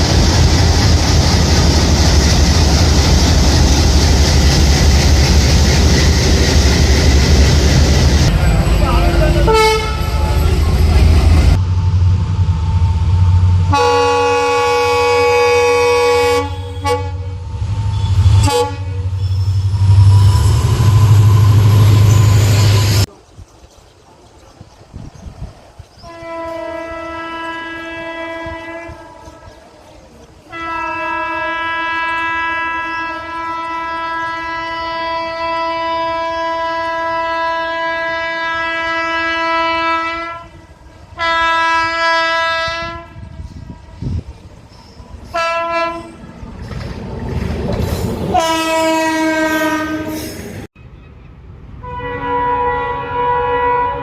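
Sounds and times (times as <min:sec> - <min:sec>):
train rumbling on track: 0:00.0 - 0:54.0
locomotive horn blasts: 0:09.4 - 0:10.3, 0:13.7 - 0:19.2, 0:26.0 - 0:29.3, 0:30.5 - 0:40.6, 0:41.2 - 0:44.2, 0:45.3 - 0:46.2, 0:48.3 - 0:50.3, 0:51.8 - 0:54.0.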